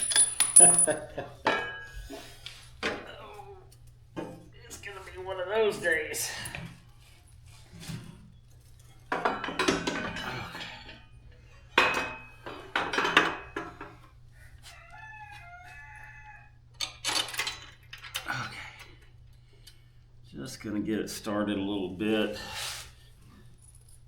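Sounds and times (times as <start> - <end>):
metal parts and tools clanking: 0.0 - 1.8.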